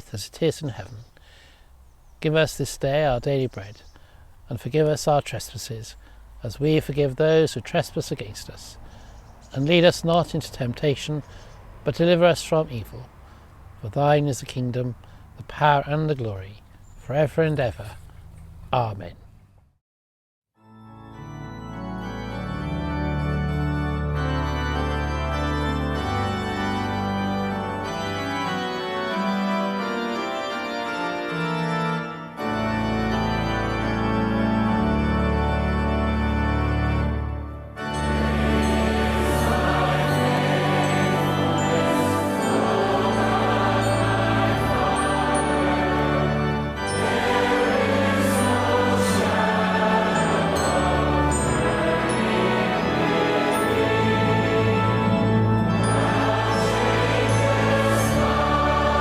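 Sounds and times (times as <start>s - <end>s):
organ chords over deep bass: 0.0s - 19.1s, 20.6s - 59.0s
sustained low accompaniment: 20.9s - 59.0s
choir singing a hymn: 22.0s - 30.3s, 37.8s - 59.0s.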